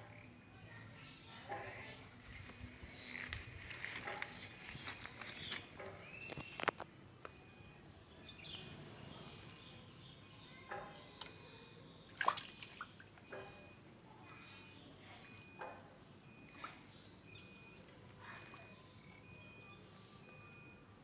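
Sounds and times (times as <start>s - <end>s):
small water splashes and drips: 10.6s - 19.1s.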